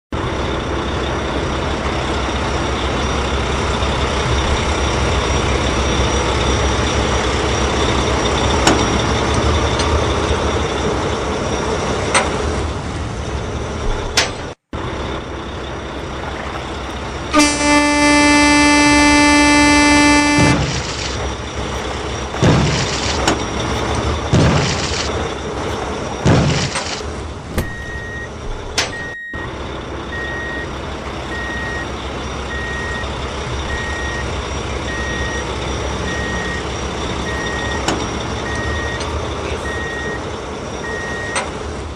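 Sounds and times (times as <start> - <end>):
truck engine running: 0.1 - 41.9
long steady horn: 17.0 - 21.4.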